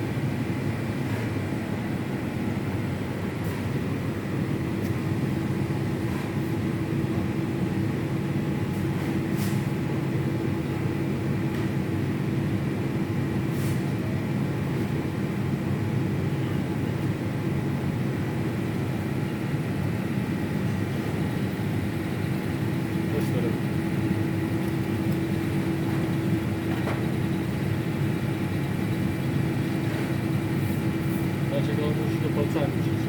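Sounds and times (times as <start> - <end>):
machine humming: 18.4 - 33.0.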